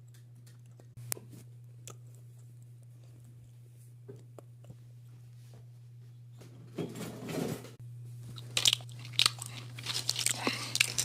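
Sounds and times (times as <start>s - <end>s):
low steady hum: 0.0s - 11.0s
crunching and biting food: 1.6s - 4.9s, 8.2s - 11.0s.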